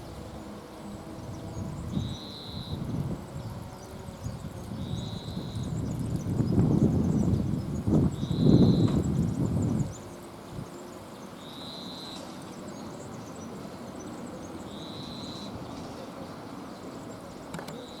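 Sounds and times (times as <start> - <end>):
wind rumble on microphone: 0.0 - 10.8.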